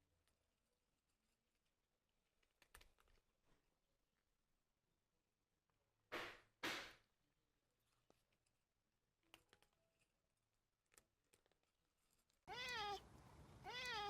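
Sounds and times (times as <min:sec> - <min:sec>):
cat meowing: 0:12.5 - 0:13.0, 0:13.6 - 0:14.0.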